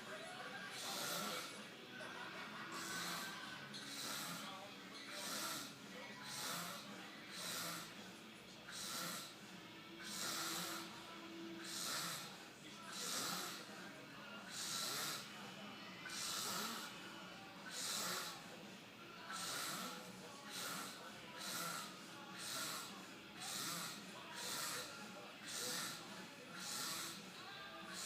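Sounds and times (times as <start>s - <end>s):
man snoring: 0.7s - 1.5s, 2.7s - 4.5s, 5.1s - 8.0s, 8.7s - 9.4s, 10.0s - 10.9s, 11.5s - 13.7s, 14.4s - 15.3s, 16.0s - 17.0s, 17.7s - 18.5s, 19.3s - 28.0s.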